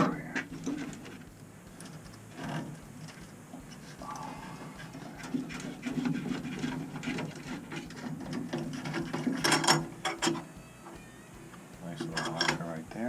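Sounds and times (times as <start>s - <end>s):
metal clatter: 0.0s - 10.5s
tools clicking on boiler parts: 5.2s - 10.5s, 12.0s - 12.7s.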